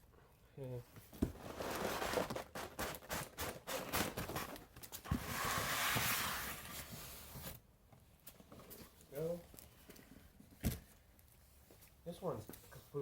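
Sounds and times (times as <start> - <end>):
cardboard scraping rustle: 1.2 - 7.6.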